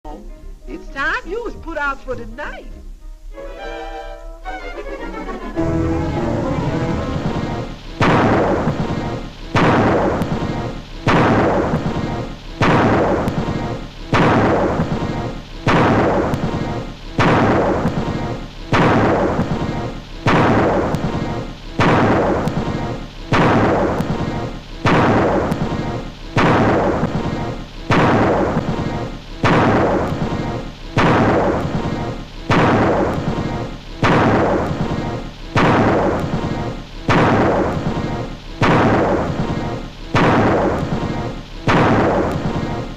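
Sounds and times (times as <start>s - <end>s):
music: 0.0s - 11.1s
cartoon thunderclap: 5.6s - 42.9s.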